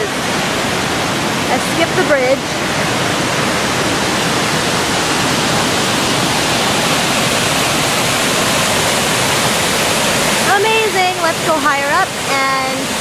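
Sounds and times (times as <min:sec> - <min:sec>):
waterfall roaring: 0:00.0 - 0:13.0.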